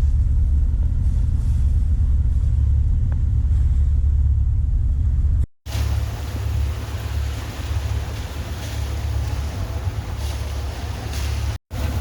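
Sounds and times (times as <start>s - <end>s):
boat engine droning: 5.6s - 12.0s.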